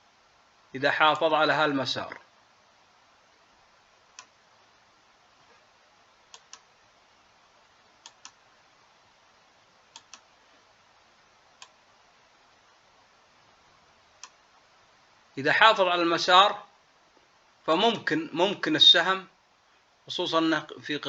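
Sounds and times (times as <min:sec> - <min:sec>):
faint hiss: 0:00.0 - 0:21.0
computer mouse clicking: 0:04.1 - 0:04.4, 0:06.3 - 0:06.7, 0:08.0 - 0:08.4, 0:09.9 - 0:10.3.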